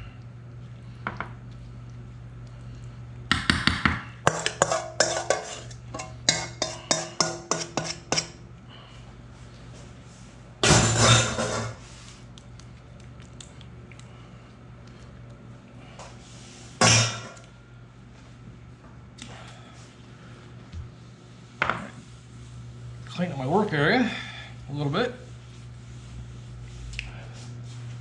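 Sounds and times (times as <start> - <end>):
steady low hum: 0.0 - 28.0
utensil clinking against dish: 4.2 - 8.4.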